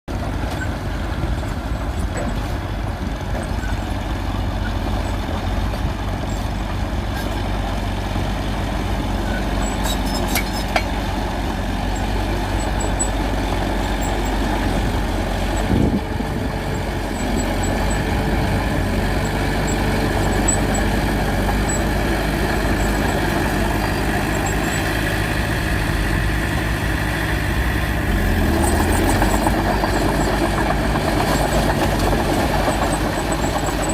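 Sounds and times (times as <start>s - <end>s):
heavy vehicle engine droning: 0.1s - 33.9s.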